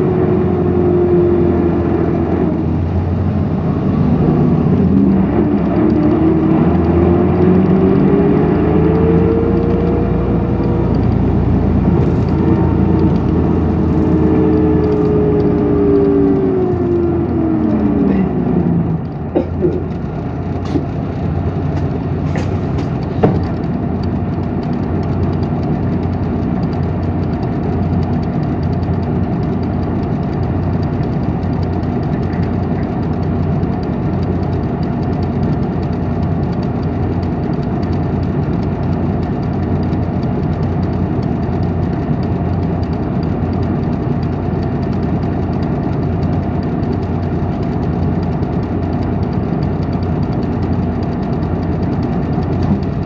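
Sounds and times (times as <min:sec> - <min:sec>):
diesel engine idling: 0:00.0 - 0:53.0
bus falling whine: 0:10.0 - 0:24.0
clicks and knocks: 0:18.9 - 0:33.9.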